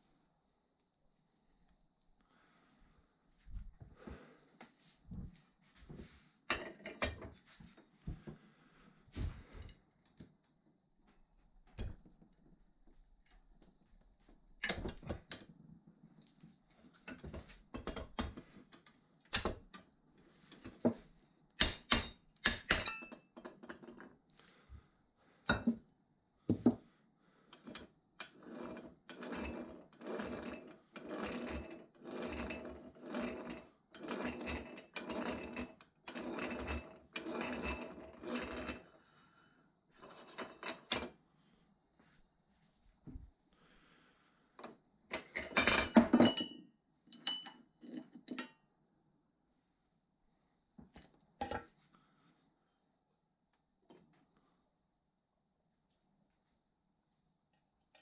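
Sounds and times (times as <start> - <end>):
clicks and knocks on metal parts: 21.6 - 24.1.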